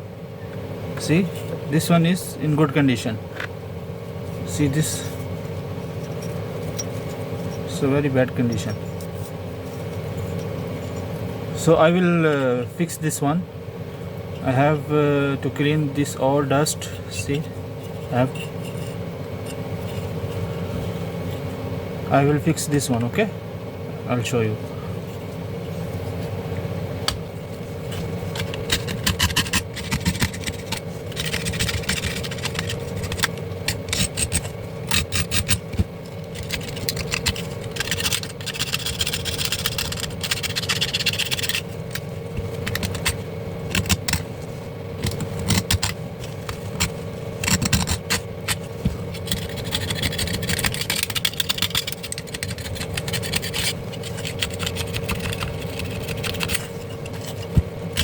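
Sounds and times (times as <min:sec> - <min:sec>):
steady hum: 0:00.0 - 0:58.0
scraping and rubbing: 0:04.3 - 0:07.7, 0:17.8 - 0:21.6, 0:27.4 - 0:58.0.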